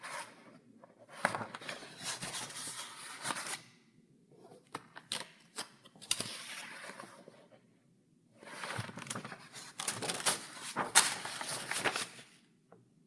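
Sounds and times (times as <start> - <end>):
paper pages turning: 8.4 - 12.4.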